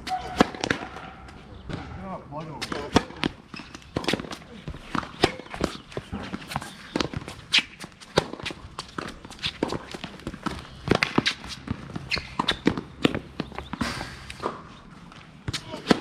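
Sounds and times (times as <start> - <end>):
footsteps on hard court: 0.5 - 16.0.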